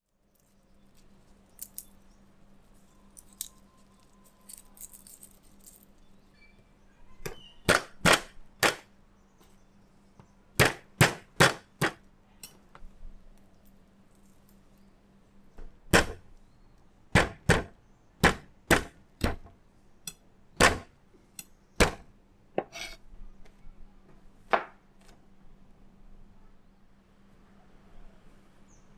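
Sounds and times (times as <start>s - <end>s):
sharp knocks: 7.7s - 8.8s, 10.6s - 12.0s, 15.9s - 16.2s, 17.2s - 19.5s, 20.6s - 20.9s, 21.8s - 22.7s.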